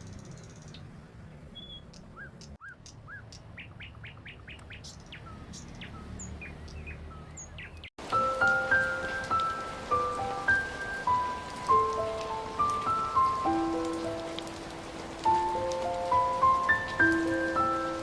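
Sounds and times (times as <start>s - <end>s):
small birds chirping: 0.0s - 7.9s.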